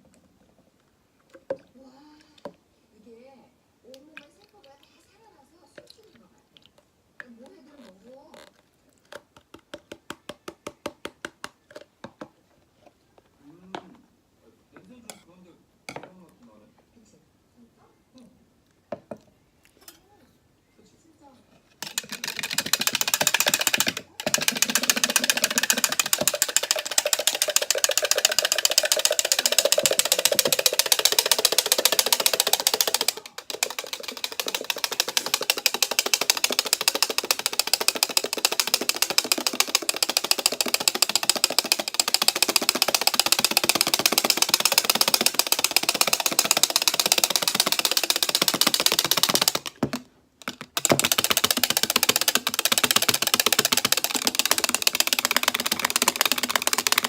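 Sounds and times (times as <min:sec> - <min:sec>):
wire whisk beating in bowl: 0:21.8 - 0:57.0.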